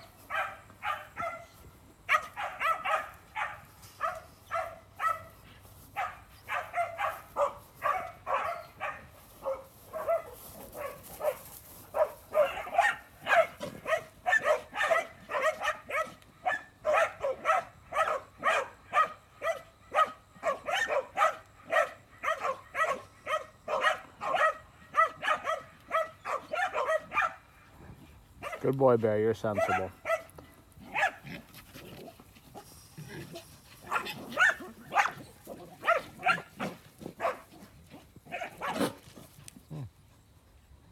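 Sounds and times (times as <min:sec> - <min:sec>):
dog barking: 0:00.0 - 0:05.3, 0:06.0 - 0:27.5, 0:28.4 - 0:28.7, 0:29.5 - 0:31.3, 0:33.8 - 0:37.7, 0:38.3 - 0:39.0.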